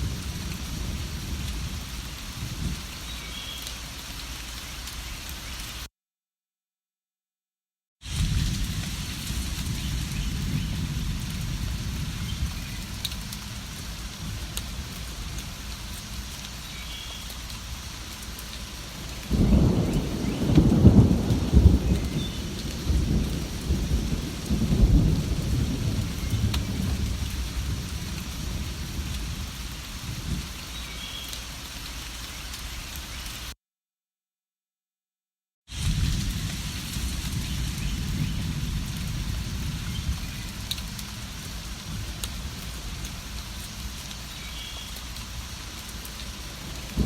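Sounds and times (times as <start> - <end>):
thunder rumble: 0.0 - 2.9, 8.1 - 16.3, 18.8 - 30.6, 35.7 - 43.9, 46.2 - 47.0
steady rain: 0.0 - 5.9, 8.0 - 33.6, 35.7 - 47.0.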